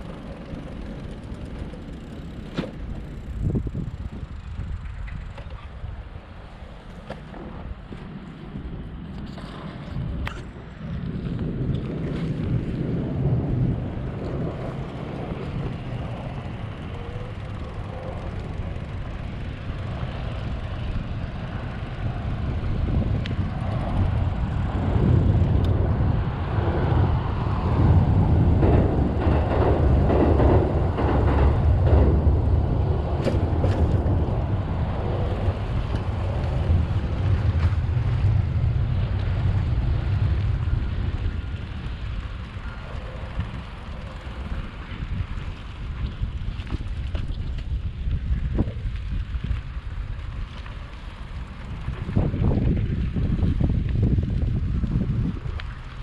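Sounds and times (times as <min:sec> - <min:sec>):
low vehicle rumble: 0:00.0 - 0:56.0
wind buffeting microphone: 0:00.0 - 0:56.0.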